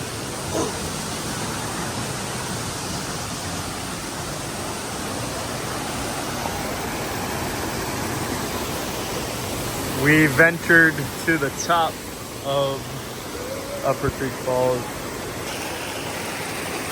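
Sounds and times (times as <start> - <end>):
waterfall rushing water: 0.0 - 16.9.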